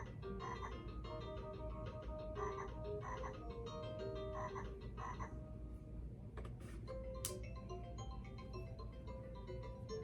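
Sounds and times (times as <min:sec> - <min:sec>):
toy frog croaking effect: 0:00.0 - 0:00.9, 0:02.3 - 0:05.4.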